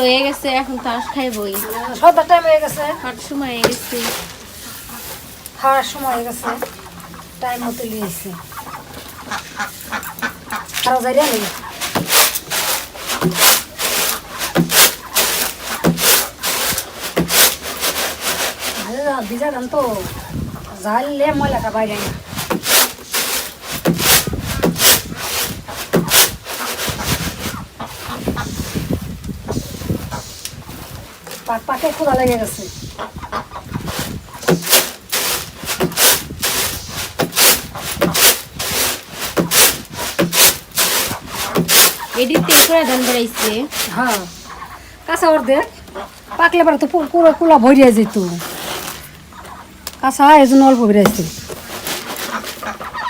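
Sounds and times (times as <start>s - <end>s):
grain swishing and rattling in tray: 1.2s - 6.5s, 10.7s - 20.3s, 21.0s - 32.8s, 33.8s - 44.5s, 50.5s - 52.8s.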